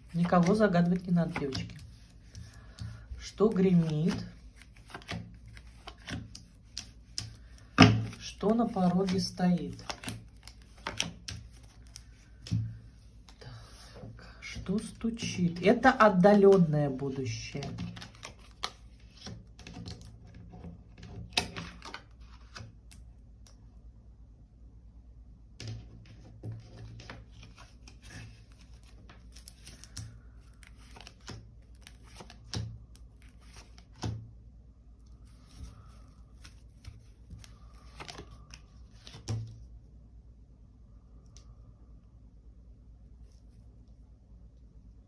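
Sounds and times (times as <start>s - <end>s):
cards shuffled and laid down: 0.0s - 13.4s, 17.5s - 22.8s, 25.6s - 34.2s, 35.3s - 39.6s
low steady hum: 0.0s - 45.0s.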